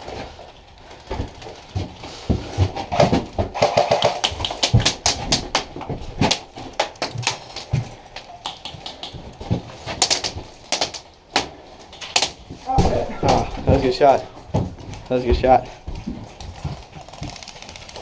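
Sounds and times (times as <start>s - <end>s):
footsteps and gear thumps: 0.0s - 8.4s, 12.4s - 18.0s.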